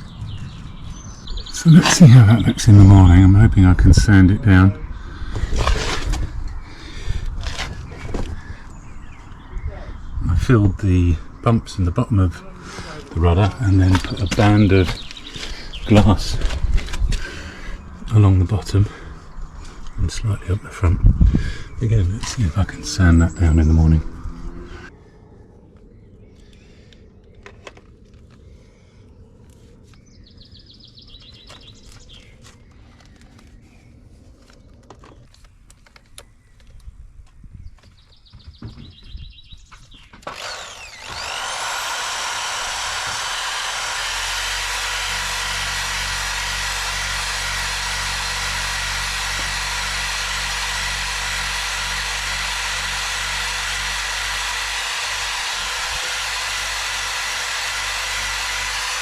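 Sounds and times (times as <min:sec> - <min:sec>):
power tool whirring: 0:00.9 - 0:24.9, 0:40.2 - 0:59.0.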